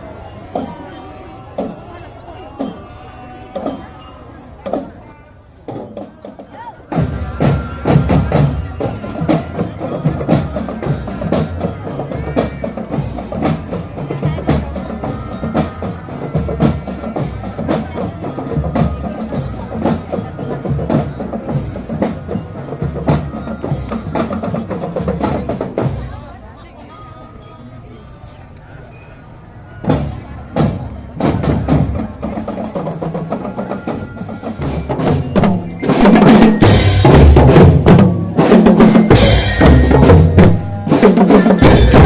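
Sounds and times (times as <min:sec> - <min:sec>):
bell-like melody: 0:00.0 - 0:42.0
marching drums: 0:05.7 - 0:26.5, 0:29.8 - 0:42.0.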